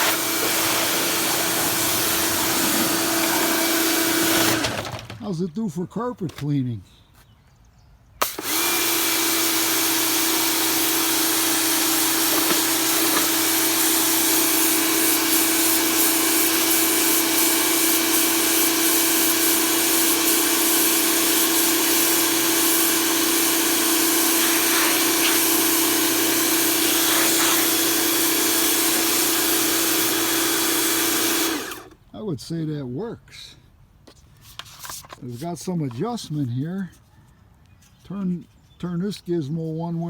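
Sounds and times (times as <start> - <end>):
water jet hissing: 0.0 - 4.4, 11.8 - 29.9
pressure washer motor whine: 0.0 - 5.0, 8.2 - 32.0.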